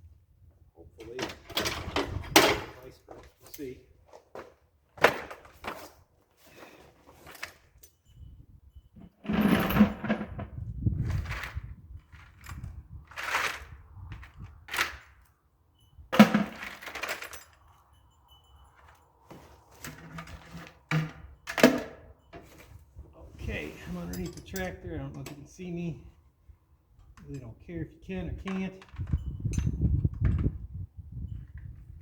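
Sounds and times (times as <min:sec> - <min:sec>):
knocks and scrapes: 0:09.0 - 0:15.1, 0:19.3 - 0:21.7, 0:22.3 - 0:24.7.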